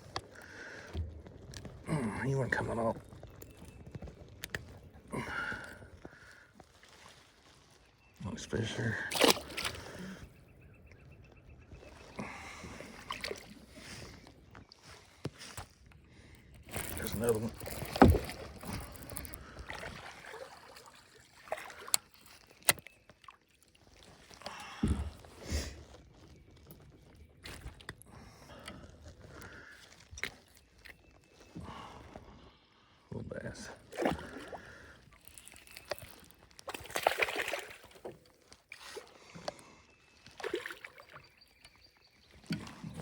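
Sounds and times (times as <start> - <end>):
water splashing and sloshing: 0.0 - 32.1, 33.5 - 43.0
rustling and small knocks: 16.7 - 19.4.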